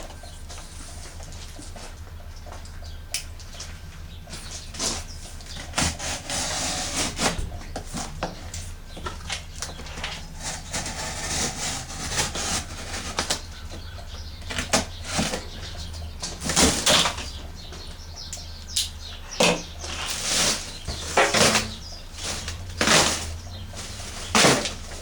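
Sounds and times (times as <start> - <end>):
plastic and cardboard rustling: 3.5 - 17.7, 19.4 - 25.0.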